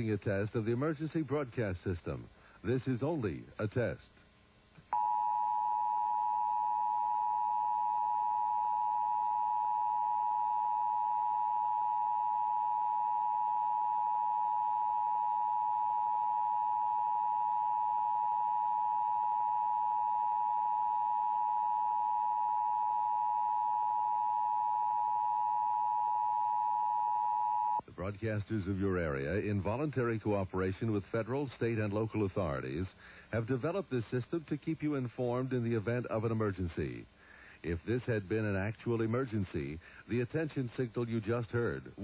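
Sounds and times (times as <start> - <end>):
continuous dual-tone attention signal: 4.9 - 27.8.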